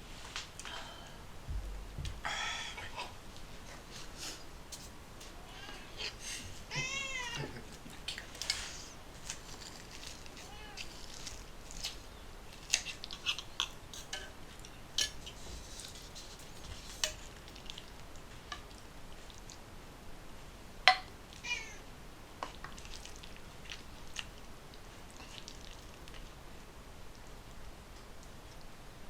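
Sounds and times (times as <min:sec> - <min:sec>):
cat meowing: 0:06.7 - 0:07.6, 0:10.4 - 0:10.9, 0:21.4 - 0:21.8.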